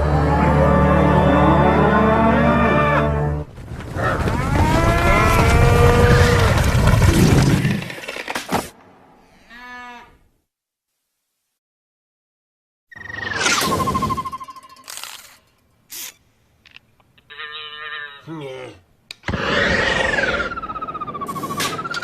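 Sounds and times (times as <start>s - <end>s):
brief warbling tone: 12.9s - 15.0s.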